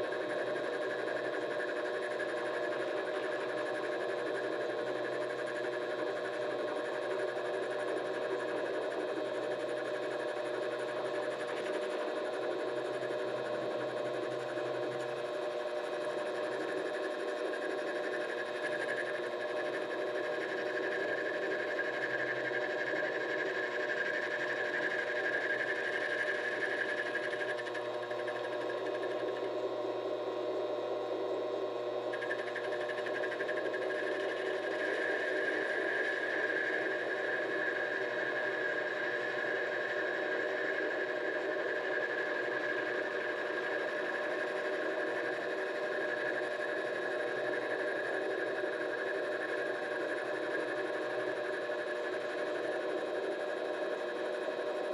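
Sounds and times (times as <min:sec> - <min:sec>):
lathe whining: 0:31.2 - 0:45.4.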